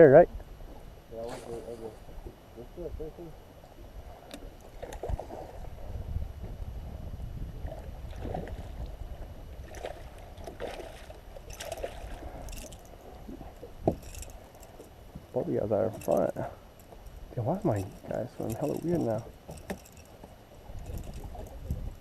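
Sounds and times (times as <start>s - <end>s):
water lapping against hull: 0.3s - 22.0s
small knocks: 13.5s - 15.3s.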